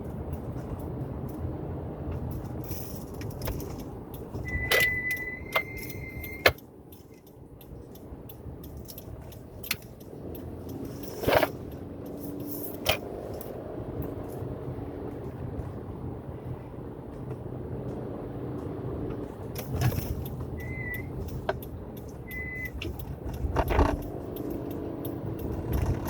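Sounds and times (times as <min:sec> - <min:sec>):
road noise: 0:00.0 - 0:26.0
car brakes squealing: 0:04.4 - 0:06.6, 0:20.5 - 0:21.2.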